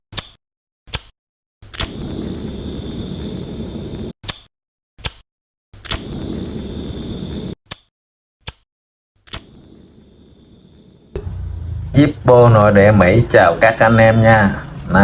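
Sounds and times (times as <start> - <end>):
lighter flame burning: 1.6 - 4.2, 5.8 - 7.9.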